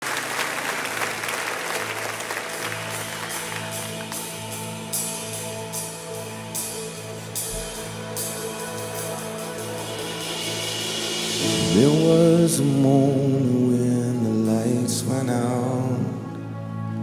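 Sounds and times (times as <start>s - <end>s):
applause: 0.0s - 4.4s
live band playing: 0.5s - 17.0s.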